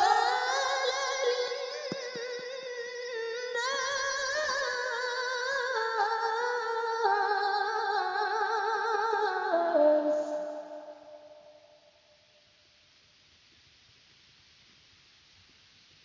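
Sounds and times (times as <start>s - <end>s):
person chanting melodic recitation: 0.0s - 11.2s.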